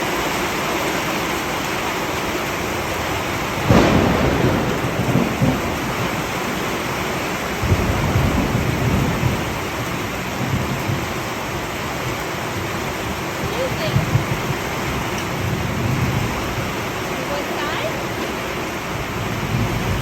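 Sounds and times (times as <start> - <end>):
steady rain: 0.0 - 20.0
thunder clap and rumble: 2.0 - 20.0.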